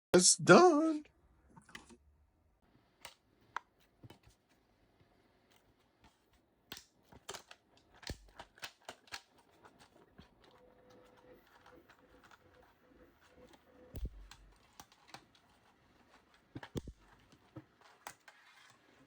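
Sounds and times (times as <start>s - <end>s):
hard plastic clicking and rattling: 5.5s - 10.6s, 14.0s - 19.0s.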